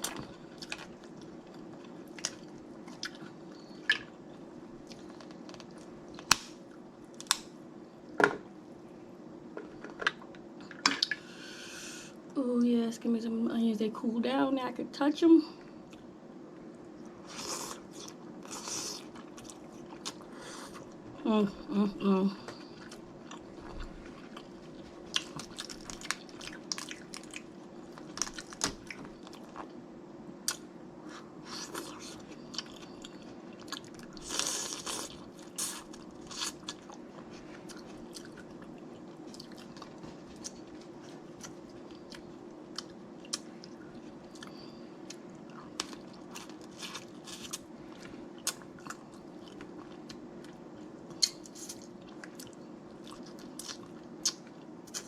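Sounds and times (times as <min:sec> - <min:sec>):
chewing: 0:00.0 - 0:04.2, 0:17.0 - 0:20.9, 0:22.5 - 0:29.8, 0:30.4 - 0:55.0
faint steady hum: 0:00.0 - 0:55.0.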